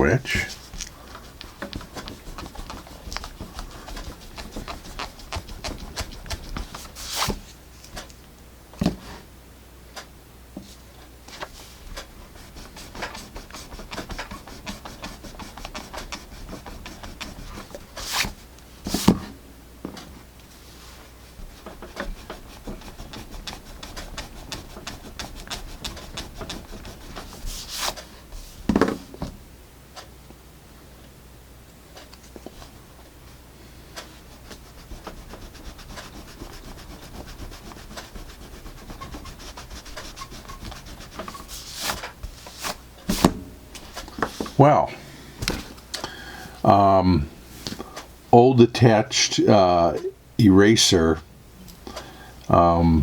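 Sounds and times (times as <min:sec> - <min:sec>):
eraser rubbing on paper: 0:00.3 - 0:07.4, 0:11.6 - 0:19.1, 0:20.8 - 0:28.5, 0:33.9 - 0:44.6
objects knocking on desk: 0:28.7 - 0:29.3.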